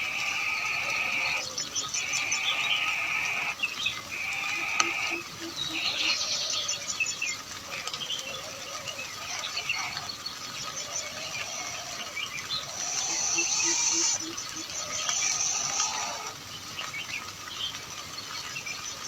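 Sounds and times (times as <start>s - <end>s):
low pulsing call: 0.0s - 6.4s, 12.6s - 16.3s
birds chirping: 0.0s - 19.0s.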